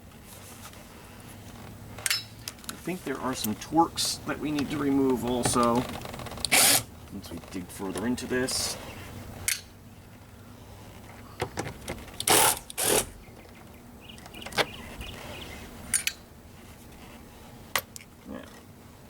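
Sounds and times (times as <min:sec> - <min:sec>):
rustling or scraping bursts: 0:00.0 - 0:01.8, 0:16.5 - 0:17.7.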